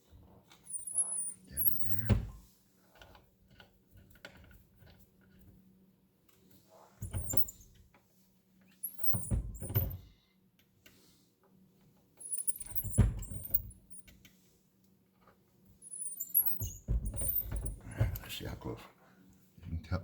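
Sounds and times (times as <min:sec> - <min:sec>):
reloading press squeaking: 0:00.7 - 0:02.1, 0:12.2 - 0:14.0, 0:15.8 - 0:17.8.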